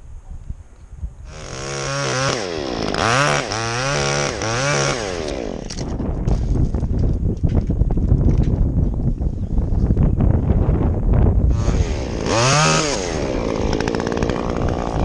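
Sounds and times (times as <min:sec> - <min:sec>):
wind rumble on microphone: 0:00.0 - 0:15.0
chainsaw revving: 0:01.3 - 0:05.9, 0:11.5 - 0:15.0.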